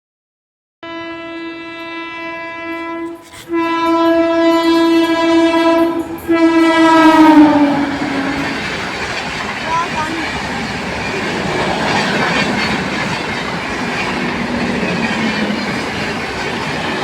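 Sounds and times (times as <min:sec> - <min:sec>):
train horn blasts: 0:00.8 - 0:08.7
passing train rumble: 0:01.0 - 0:17.0.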